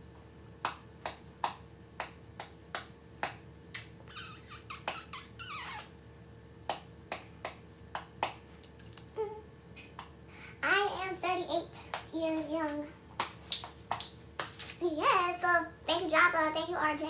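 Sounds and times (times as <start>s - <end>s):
squeaky scraping: 3.8s - 5.9s.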